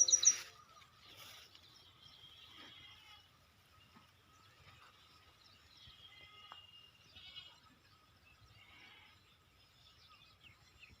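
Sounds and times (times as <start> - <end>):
distant goats bleating: 1.0 - 3.4, 5.8 - 7.7, 8.5 - 9.3.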